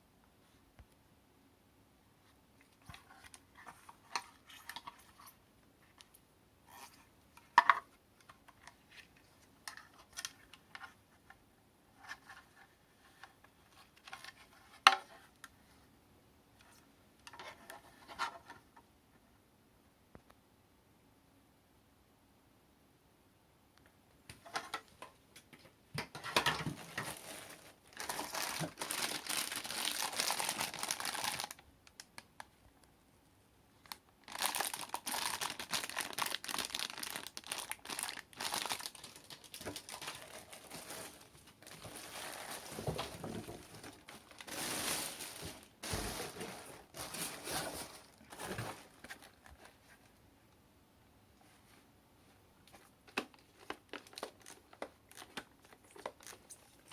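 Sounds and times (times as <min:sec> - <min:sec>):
packaging crinkling and rustling: 0:26.1 - 0:32.5, 0:33.8 - 0:50.1, 0:52.7 - 0:56.9.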